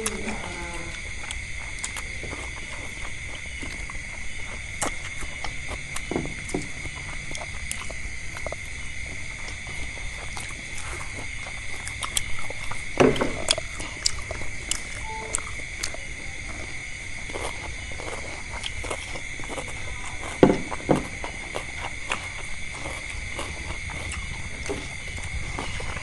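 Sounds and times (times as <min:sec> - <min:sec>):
people chewing: 0:00.0 - 0:26.0
steady high-pitched tone: 0:15.0 - 0:16.0.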